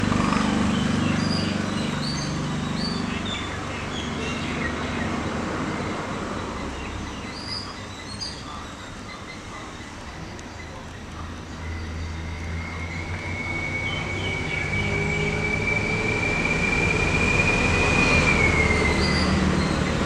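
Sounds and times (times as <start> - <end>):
low engine hum of traffic: 0.0 - 20.0
bird chirps: 0.3 - 5.1, 5.8 - 15.4, 18.0 - 20.0.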